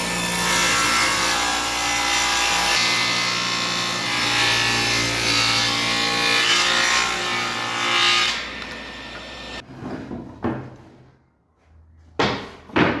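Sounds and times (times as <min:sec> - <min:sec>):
power tool cutting wood: 0:00.0 - 0:09.6
wooden knocks and clunks: 0:09.2 - 0:11.2, 0:12.1 - 0:13.0.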